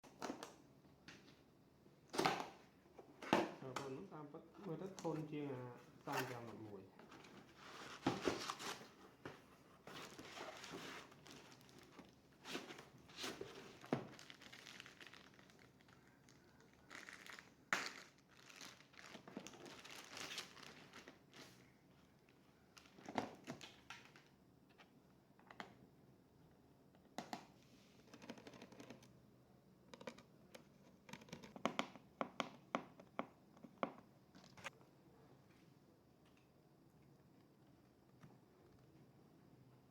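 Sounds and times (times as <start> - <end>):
packaging crinkling and rustling: 9.8 - 24.3.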